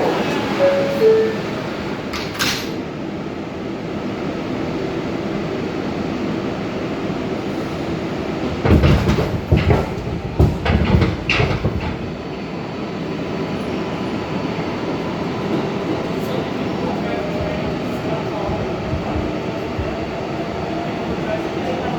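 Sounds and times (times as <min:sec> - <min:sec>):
subway train rumbling: 0:00.0 - 0:21.9
wheels clattering on track: 0:07.8 - 0:12.5, 0:15.2 - 0:21.9.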